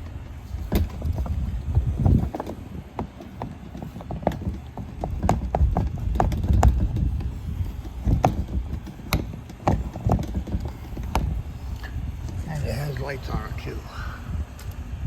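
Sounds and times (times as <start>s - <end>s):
footsteps on hard ground: 0.0s - 13.8s
wind rumble on microphone: 0.0s - 15.0s.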